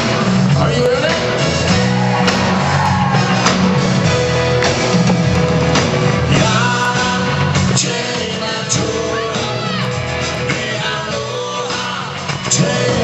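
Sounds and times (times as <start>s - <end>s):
live rock band playing: 0.0s - 13.0s
person singing: 0.4s - 3.1s, 6.3s - 13.0s.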